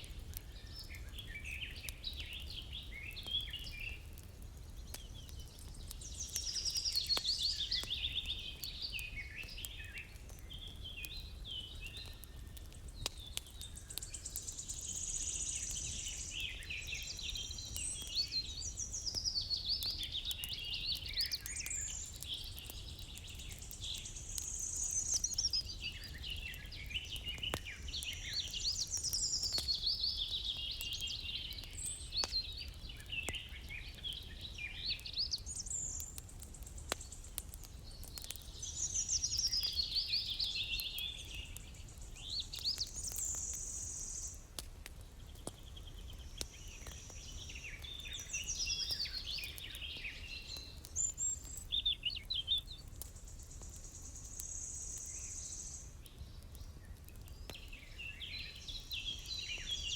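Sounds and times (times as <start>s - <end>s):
songbirds singing: 0.0s - 59.9s
faint clicks: 35.8s - 38.5s.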